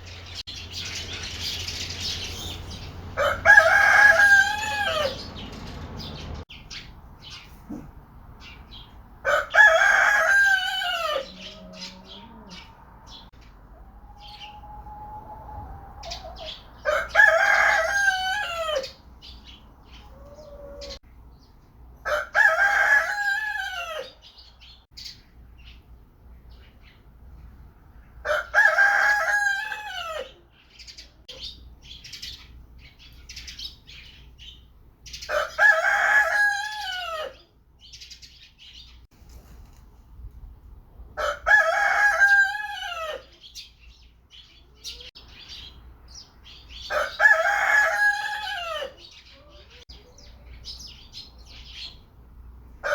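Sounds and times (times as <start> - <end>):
rooster crowing: 3.2 - 5.5, 9.2 - 13.2, 13.8 - 19.0, 22.0 - 24.2, 28.2 - 30.4, 35.3 - 37.4, 41.2 - 43.3, 46.9 - 49.1.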